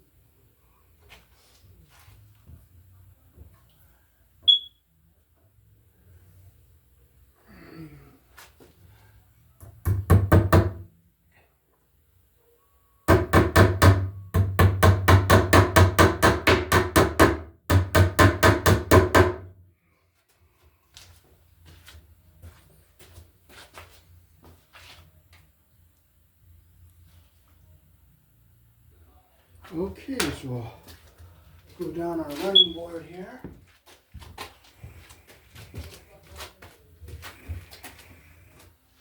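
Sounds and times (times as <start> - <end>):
hammer tapping nails into wood: 13.1 - 19.5.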